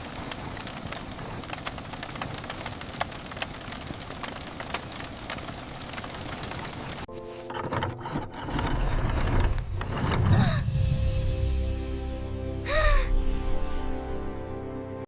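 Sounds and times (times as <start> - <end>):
raindrops clicking: 0.0 - 7.1
steady rain: 0.0 - 7.1.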